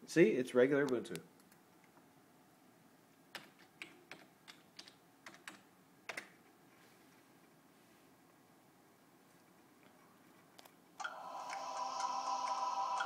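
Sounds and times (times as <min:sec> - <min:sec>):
computer keyboard keystrokes: 0:03.3 - 0:06.4.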